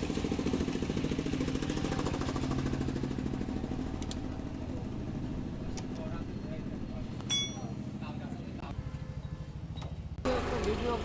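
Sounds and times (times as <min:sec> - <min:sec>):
small engine running: 0:00.0 - 0:07.0, 0:08.0 - 0:11.0
metallic clink: 0:07.2 - 0:07.8.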